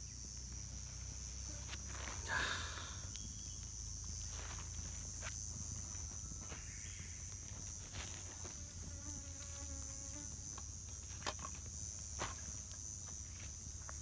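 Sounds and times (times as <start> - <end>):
high-pitched insect drone: 0.0 - 10.5.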